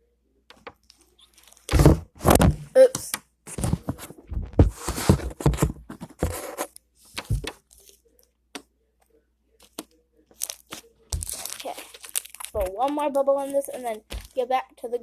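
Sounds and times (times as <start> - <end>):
slime squishing by hand: 9.6 - 14.6.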